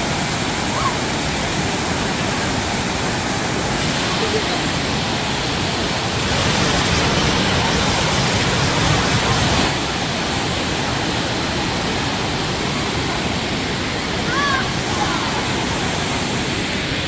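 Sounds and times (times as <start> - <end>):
waterfall roar: 0.0 - 17.0.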